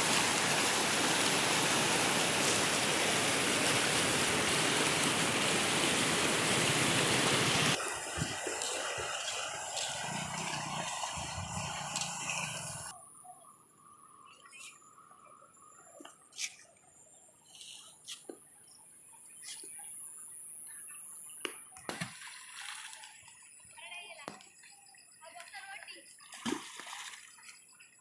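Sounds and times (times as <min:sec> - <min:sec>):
rushing river water: 0:00.0 - 0:12.9.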